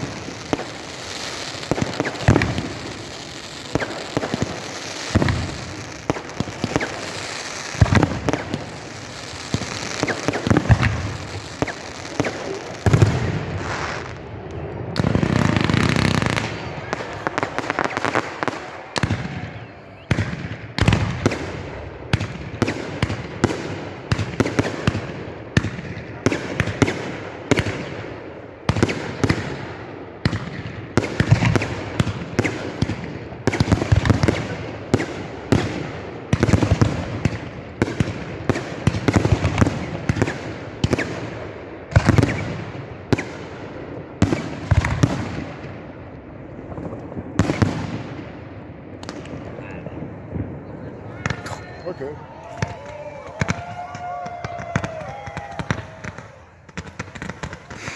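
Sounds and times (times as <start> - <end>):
fireworks shells bursting: 15.0 - 23.2, 49.1 - 57.9.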